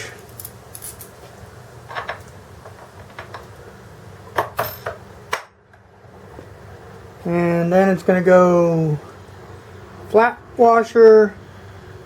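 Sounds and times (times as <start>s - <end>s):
small metal hardware clinking: 0.3s - 1.2s, 4.4s - 5.0s.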